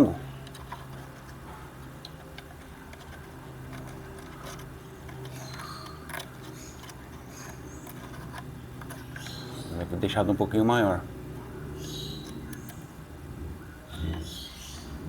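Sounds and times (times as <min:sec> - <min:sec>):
steady low hum: 0:00.0 - 0:15.0
wires and small parts clicking: 0:00.4 - 0:09.6, 0:11.8 - 0:12.9.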